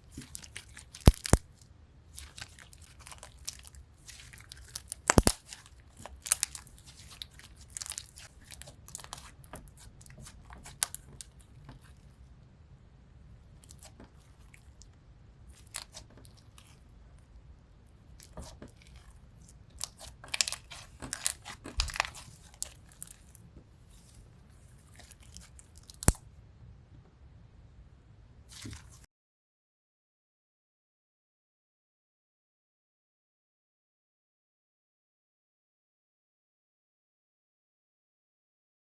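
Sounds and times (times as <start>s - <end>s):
crunchy slime crackling: 0.0s - 12.1s, 13.5s - 14.9s, 15.5s - 16.9s, 18.1s - 26.2s.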